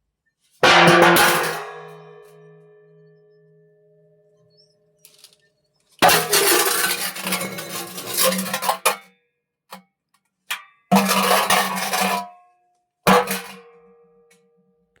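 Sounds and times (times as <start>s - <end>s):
metal pot clattering and clanking: 6.0s - 9.1s, 10.9s - 12.4s, 13.1s - 13.7s.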